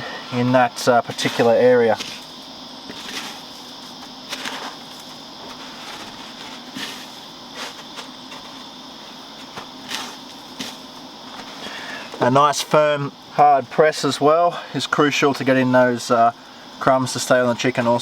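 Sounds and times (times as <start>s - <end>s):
high insect drone: 0.0s - 18.0s
breadcrumbs rustling and tapping: 0.8s - 8.8s, 9.4s - 11.6s.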